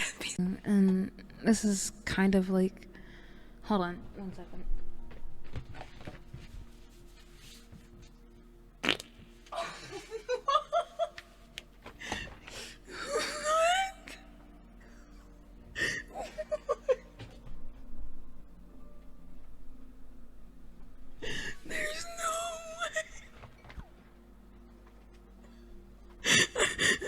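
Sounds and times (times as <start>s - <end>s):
person farting: 8.8s - 9.3s
person giggling: 9.5s - 11.4s, 15.8s - 17.4s, 21.6s - 23.5s.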